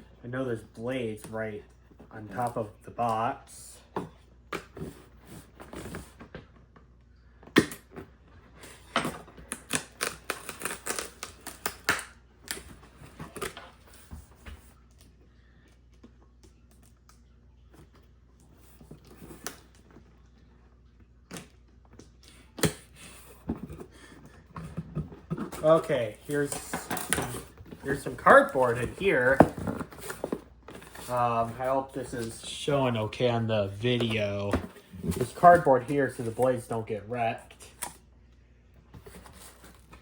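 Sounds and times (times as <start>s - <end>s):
cardboard box being opened: 23.3s - 32.5s, 33.9s - 36.5s, 39.0s - 40.0s.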